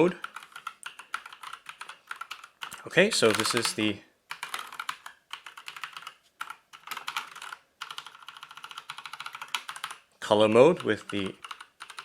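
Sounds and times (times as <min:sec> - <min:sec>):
mechanical keyboard typing: 0:00.1 - 0:10.1, 0:10.7 - 0:12.0.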